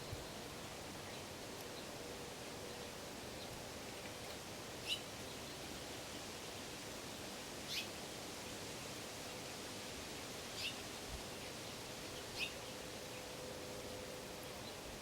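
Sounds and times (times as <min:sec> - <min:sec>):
steady hiss: 0:00.0 - 0:15.0
small bird chirping: 0:04.8 - 0:05.6, 0:07.7 - 0:07.9, 0:10.6 - 0:10.8, 0:12.2 - 0:12.8.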